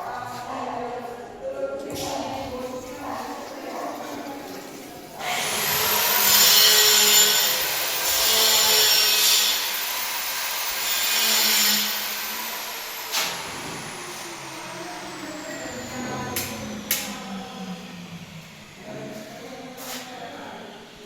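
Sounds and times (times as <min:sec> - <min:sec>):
electric power tool whining: 0:05.2 - 0:18.4.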